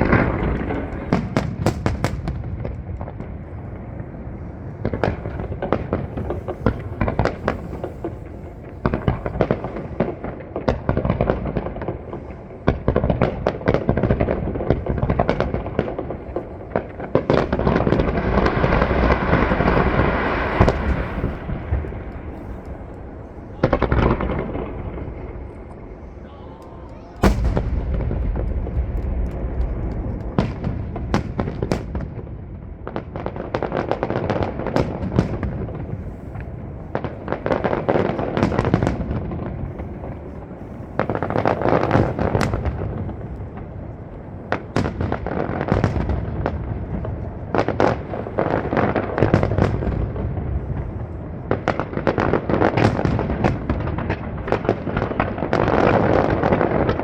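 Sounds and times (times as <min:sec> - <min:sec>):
fireworks bursting and crackling: 0:00.0 - 0:57.0
deep rumble: 0:27.2 - 0:31.2.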